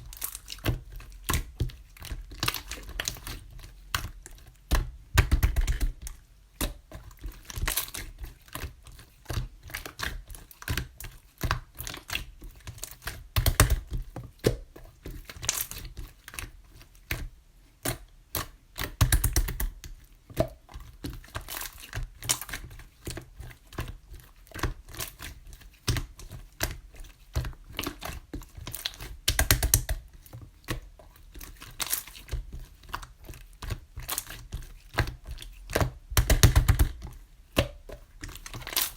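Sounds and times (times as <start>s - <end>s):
sticky slime clicks and pops: 29.3s - 30.0s, 36.1s - 37.0s.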